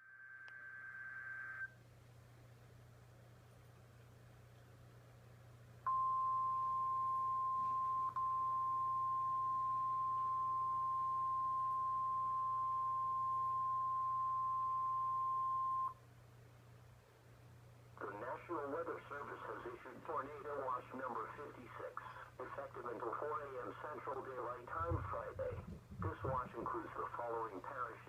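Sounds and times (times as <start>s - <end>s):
steady high-pitched beep: 5.9s - 16.0s.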